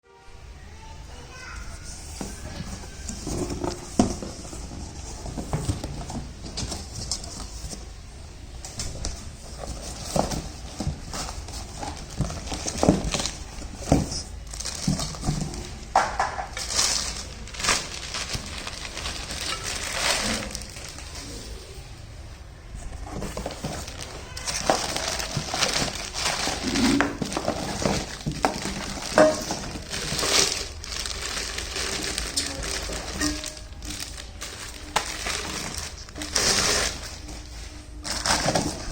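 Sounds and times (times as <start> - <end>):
packaging crinkling and rustling: 1.7 - 21.9, 22.7 - 38.9
steel pots and lids clinking: 31.9 - 34.0.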